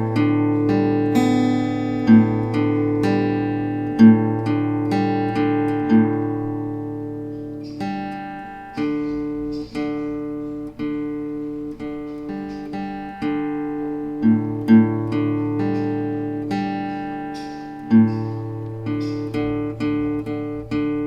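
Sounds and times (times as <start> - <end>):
acoustic guitar picking: 0.0 - 21.0.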